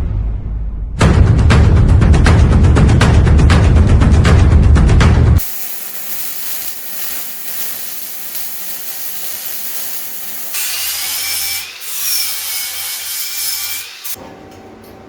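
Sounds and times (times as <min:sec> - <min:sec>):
power tool grinding steel: 0:05.4 - 0:14.2.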